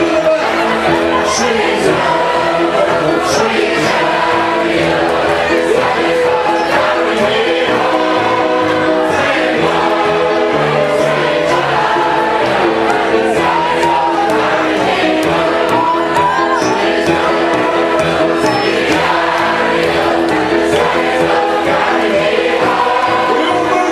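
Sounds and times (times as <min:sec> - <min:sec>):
crowd singing gospel: 0:00.0 - 0:23.9
music with regular beat: 0:09.2 - 0:23.1.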